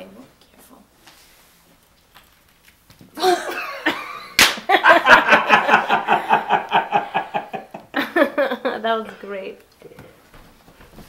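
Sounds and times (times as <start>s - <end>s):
person laughing hard: 3.2s - 8.7s
sharp slap: 4.4s - 4.7s.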